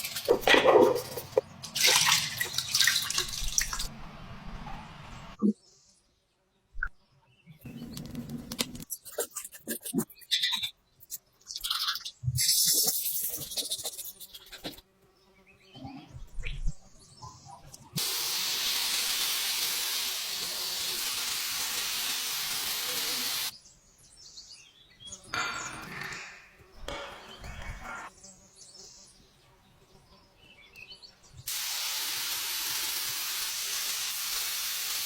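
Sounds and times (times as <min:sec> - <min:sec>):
short hissing bursts: 0:18.0 - 0:23.5, 0:31.5 - 0:35.0
steady spraying hiss: 0:18.0 - 0:23.5, 0:31.5 - 0:35.0.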